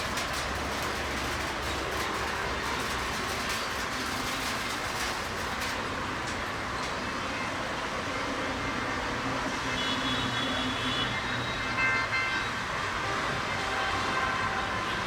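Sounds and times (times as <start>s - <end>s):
train rumble and rush: 0.0s - 7.0s.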